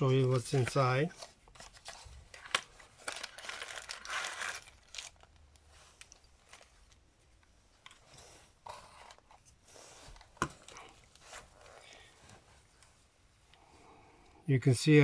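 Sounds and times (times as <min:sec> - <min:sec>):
packaging crinkling and rustling: 0:00.0 - 0:08.1.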